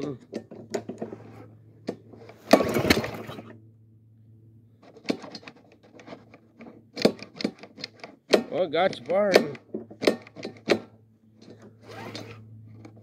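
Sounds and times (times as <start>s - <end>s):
lawn mower engine pull-started: 2.2s - 3.6s, 11.4s - 13.0s.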